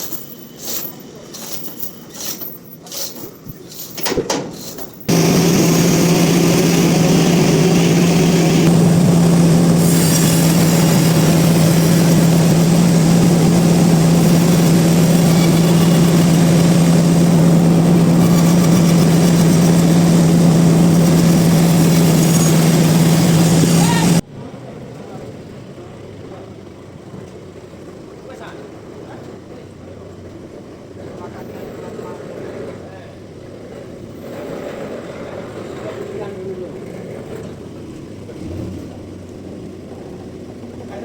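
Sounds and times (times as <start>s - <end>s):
sawmill machinery running: 4.6s - 24.2s.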